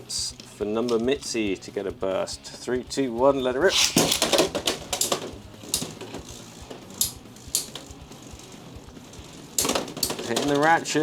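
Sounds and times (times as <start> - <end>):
spinning tops clattering hits: 3.6 - 11.0
faint spinning hum: 4.5 - 11.0.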